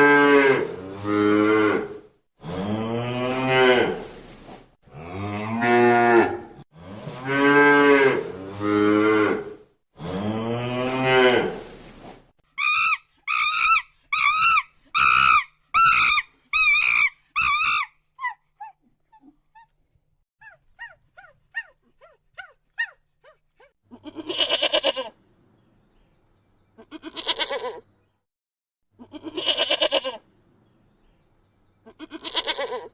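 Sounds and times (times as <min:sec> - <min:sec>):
goat bleating: 0:23.9 - 0:25.2, 0:26.8 - 0:27.8, 0:29.0 - 0:30.2, 0:31.9 - 0:32.9.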